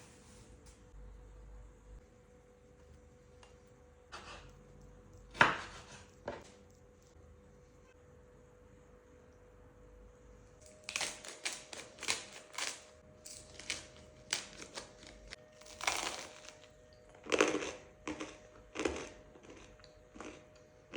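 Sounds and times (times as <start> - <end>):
faint steady hum: 0.0 - 20.9
bread crunching: 10.6 - 20.9.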